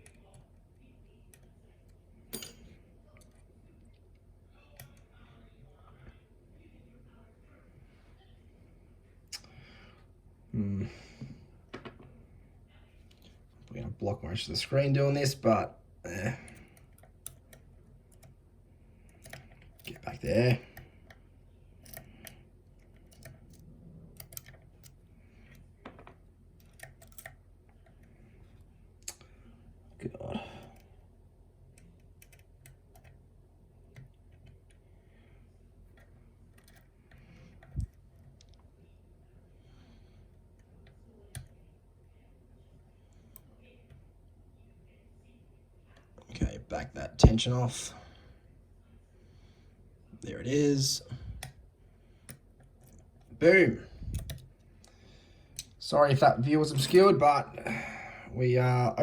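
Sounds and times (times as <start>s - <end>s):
lock-picking tools clicking: 21.8s - 25.6s, 26.6s - 28.1s.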